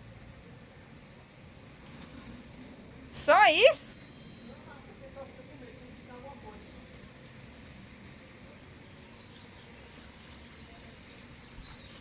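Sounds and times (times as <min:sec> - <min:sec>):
small birds chirping: 0:07.8 - 0:12.0.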